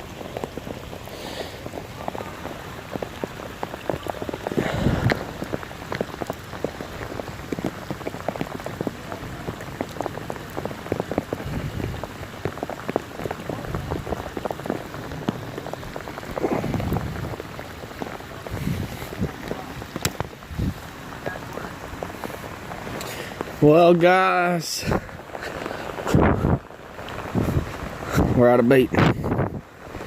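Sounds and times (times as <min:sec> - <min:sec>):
rain falling: 0:00.0 - 0:30.0
raindrops ticking close: 0:00.0 - 0:30.0.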